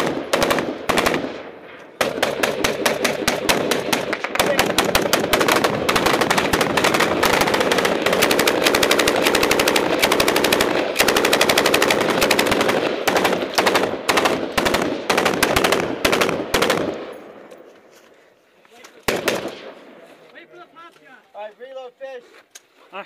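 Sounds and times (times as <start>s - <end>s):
machine gun bursts: 2.0s - 16.9s.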